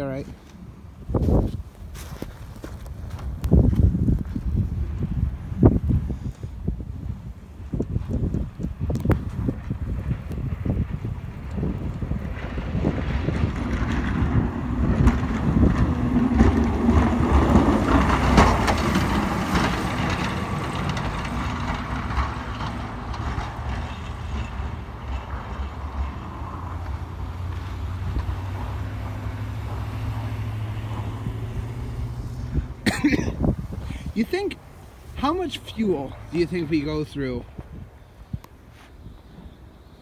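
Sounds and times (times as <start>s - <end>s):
truck engine passing by: 9.1s - 38.0s.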